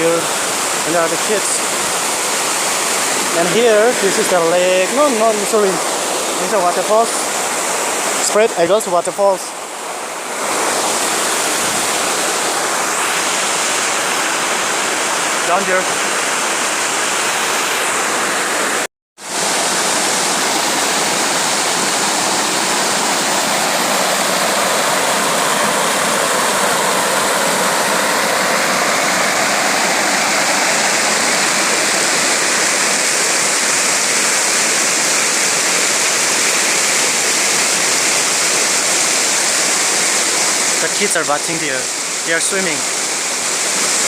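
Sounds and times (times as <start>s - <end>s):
waterfall rushing: 0.0s - 44.0s.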